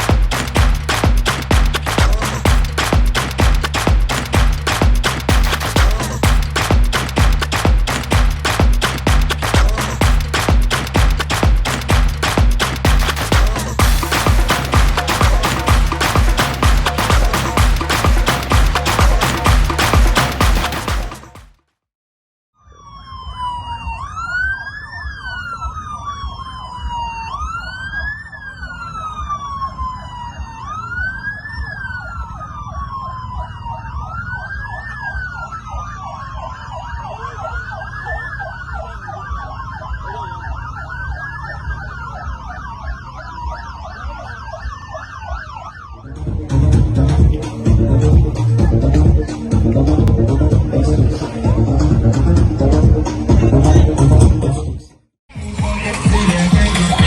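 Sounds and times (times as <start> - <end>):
siren wailing: 13.0 - 20.1, 22.6 - 46.4.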